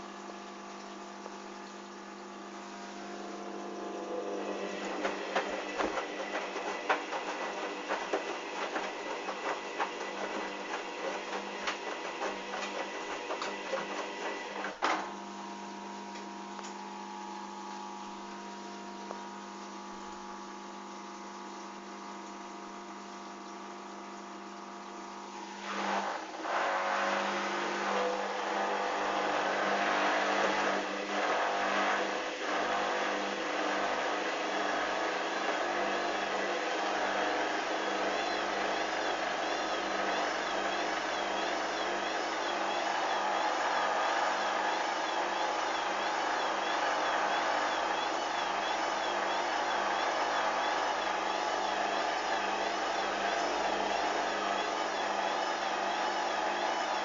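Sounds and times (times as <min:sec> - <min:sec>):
washing machine motor whine: 0:00.0 - 0:57.0
drum knocking and clattering: 0:04.8 - 0:15.0.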